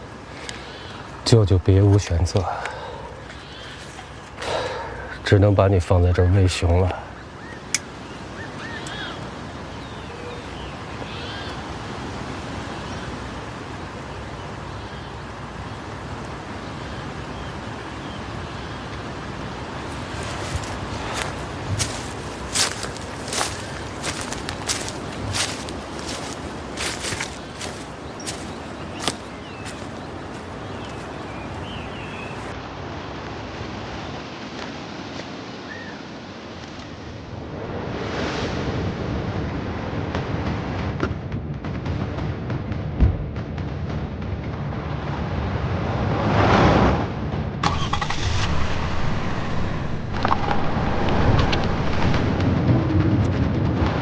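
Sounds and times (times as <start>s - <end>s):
wind-like hiss: 0.0s - 40.9s, 44.5s - 54.0s
bird calls: 0.3s - 1.2s, 2.5s - 11.9s, 19.9s - 32.6s, 35.6s - 36.1s.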